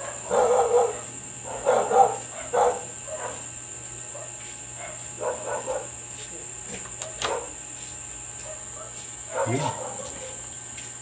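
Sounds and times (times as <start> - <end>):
dog barking: 0.0 - 3.5, 4.1 - 6.0, 7.2 - 7.6, 8.4 - 10.4.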